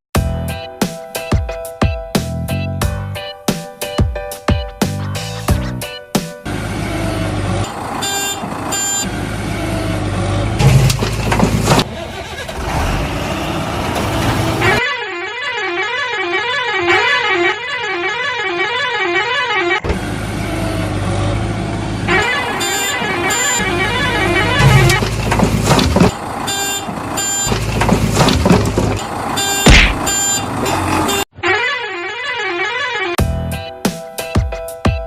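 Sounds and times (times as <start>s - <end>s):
horn honks: 8.0s - 9.1s, 12.6s - 20.0s, 22.1s - 33.2s
toy vehicle engine rumble: 10.0s - 13.1s.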